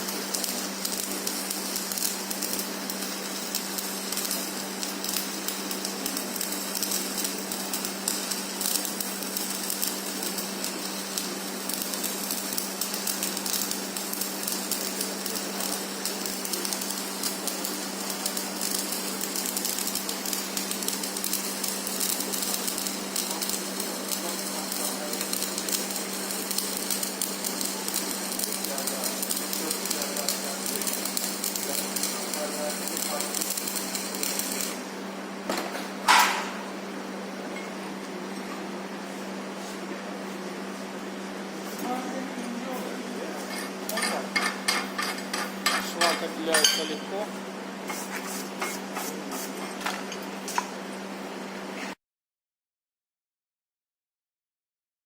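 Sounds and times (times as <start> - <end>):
welding arc crackling: 0.0 - 35.0.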